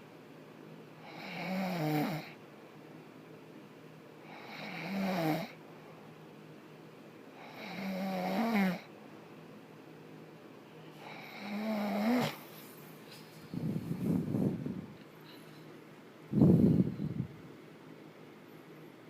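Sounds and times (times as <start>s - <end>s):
man snoring: 1.0s - 2.4s, 4.3s - 5.6s, 7.4s - 8.9s, 11.0s - 12.4s.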